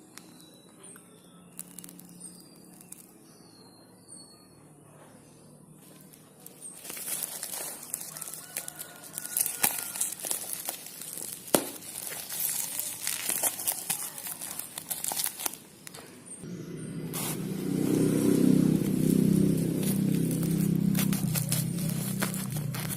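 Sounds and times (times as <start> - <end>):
package wrapping crinkling and tearing: 1.6 - 3.1, 5.9 - 16.0, 18.8 - 22.9.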